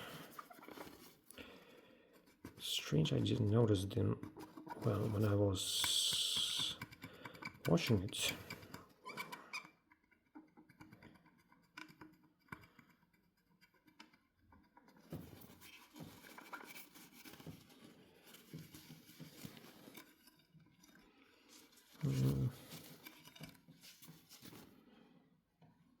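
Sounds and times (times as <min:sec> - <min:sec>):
light scratching: 0:00.0 - 0:01.3, 0:02.2 - 0:06.9, 0:15.0 - 0:24.7.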